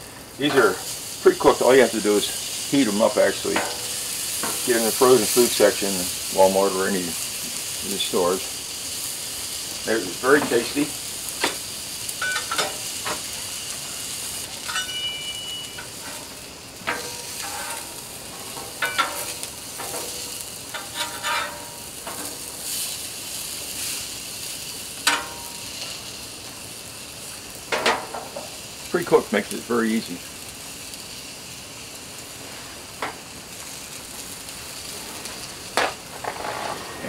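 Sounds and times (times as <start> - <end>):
sausage patties sizzling on a griddle: 0.0 - 37.0
utensil scraping a griddle: 12.2 - 24.2, 34.9 - 37.0.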